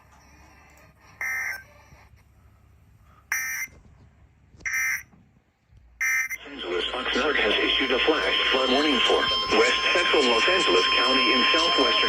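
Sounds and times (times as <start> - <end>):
electronic data tone bursts: 6.0 - 12.0.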